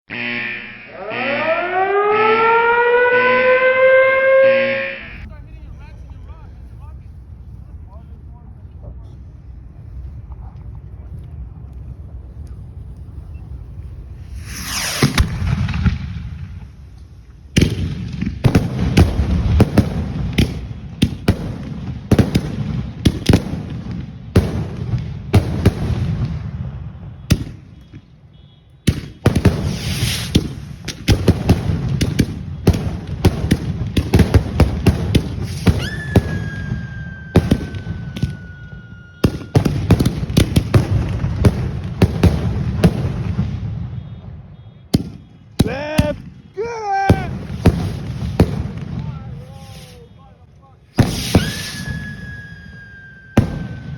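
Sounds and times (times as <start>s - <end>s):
firework whistle falling in pitch: 0.1s - 5.3s, 14.2s - 15.6s, 35.4s - 40.0s, 51.0s - 53.9s
fireworks bangs and crackles: 5.2s - 53.9s.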